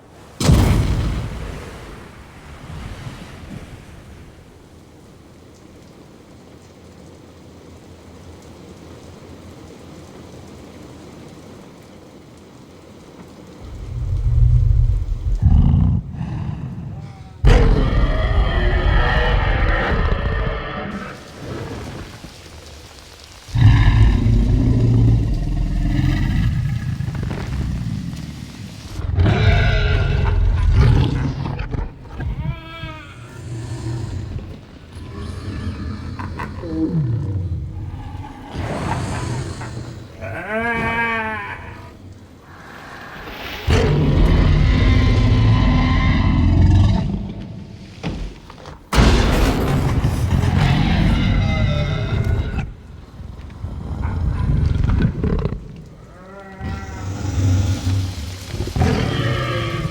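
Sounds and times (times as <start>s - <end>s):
steady rain: 0.0s - 59.9s
low growls: 13.3s - 22.4s, 23.0s - 59.9s
dinosaur bellowing call: 28.8s - 47.7s, 53.8s - 59.9s.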